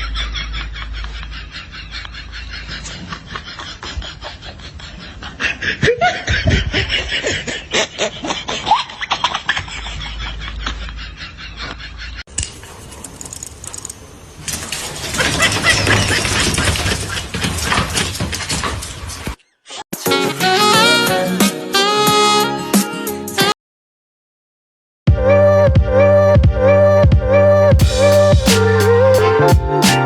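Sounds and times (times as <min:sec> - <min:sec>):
people laughing: 0:00.0 - 0:12.2
rising and falling cries: 0:26.6 - 0:30.0.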